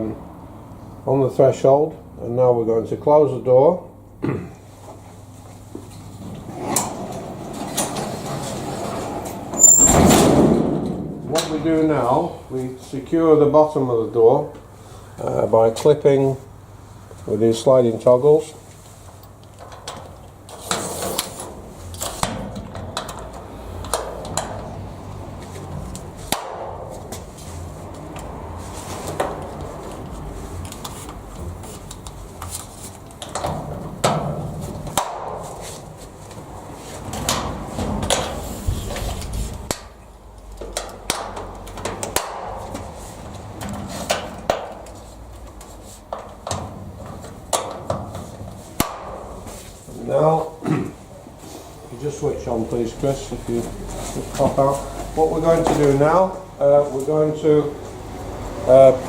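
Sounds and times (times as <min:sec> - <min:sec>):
garage door toggles clicking shut: 0:06.2 - 0:11.7.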